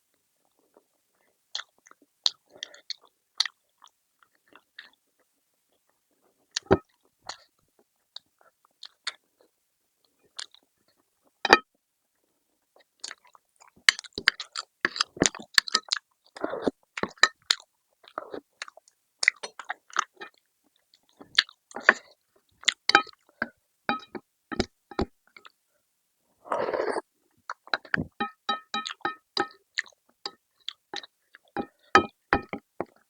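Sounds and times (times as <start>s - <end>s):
chewing and biting food: 1.5s - 5.0s, 12.9s - 20.4s, 21.0s - 23.2s.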